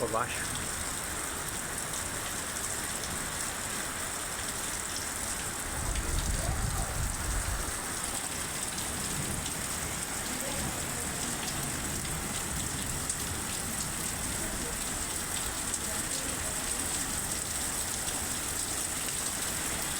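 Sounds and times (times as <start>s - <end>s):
heavy rain: 0.0s - 19.9s.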